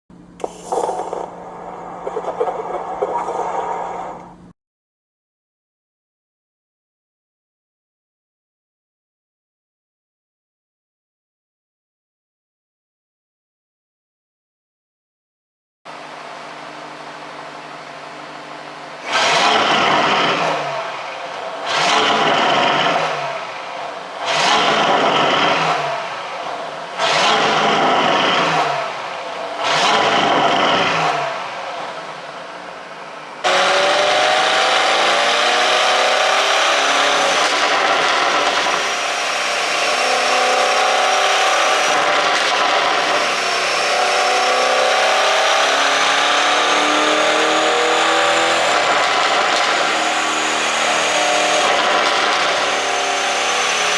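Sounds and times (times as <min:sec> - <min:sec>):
car engine idling and revving: 0:00.1 - 0:04.5, 0:15.9 - 0:53.9
loud steady engine note: 0:00.1 - 0:04.5, 0:15.9 - 0:53.9.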